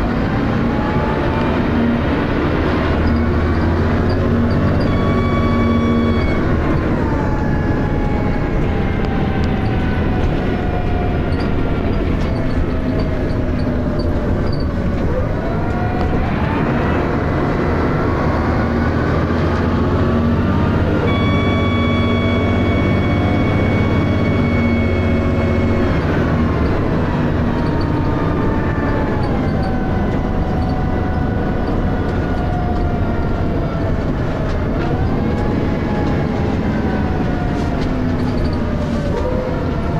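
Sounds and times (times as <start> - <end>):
bus diesel engine: 0.0 - 39.9
steady high whine: 21.0 - 33.0.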